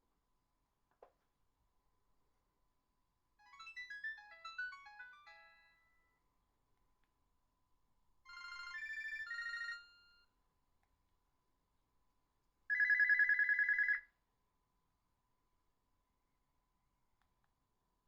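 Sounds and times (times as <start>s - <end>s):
short electronic ringtone melody: 3.4s - 6.0s, 8.3s - 10.2s
fast-warbling phone ring: 12.7s - 14.0s.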